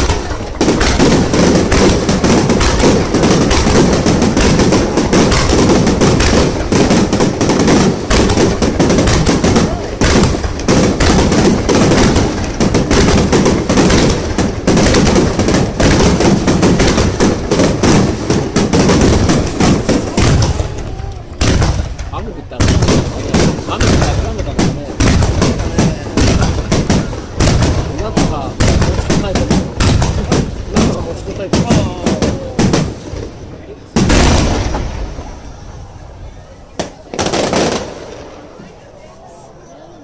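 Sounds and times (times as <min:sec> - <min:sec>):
fireworks bangs and crackling: 0:00.0 - 0:40.0.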